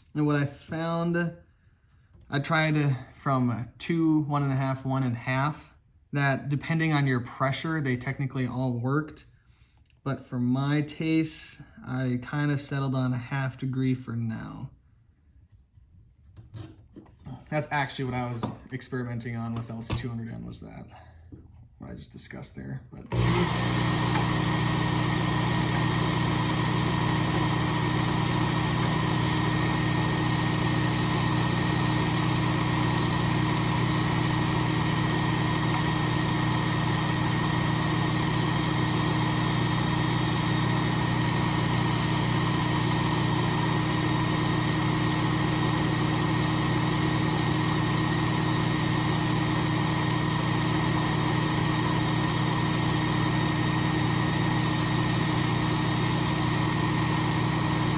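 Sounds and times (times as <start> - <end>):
belt sharpener motor hum: 23.1 - 57.9.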